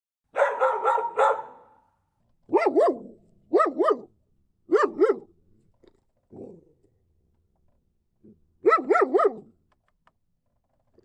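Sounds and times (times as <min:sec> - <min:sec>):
dog barking: 0:00.3 - 0:01.9, 0:02.5 - 0:04.1, 0:04.7 - 0:05.3, 0:08.6 - 0:09.5.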